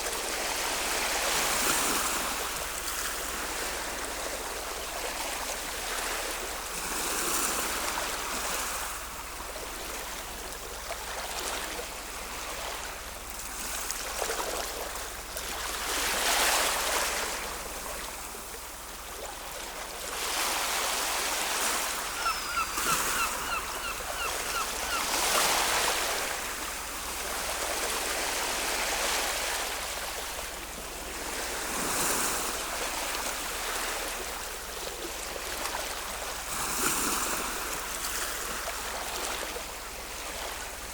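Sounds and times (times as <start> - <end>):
ocean waves breaking: 0.0 - 40.9
bird chirping: 22.0 - 25.5.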